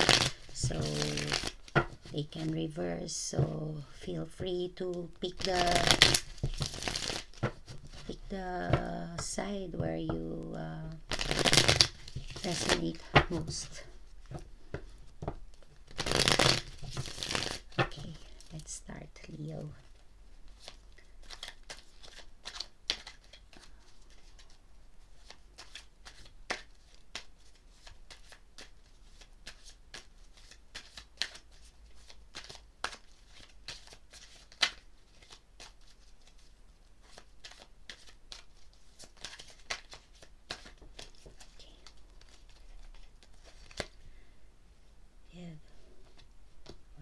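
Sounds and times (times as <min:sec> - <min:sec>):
cards being shuffled: 0:00.0 - 0:24.6, 0:25.2 - 0:44.1.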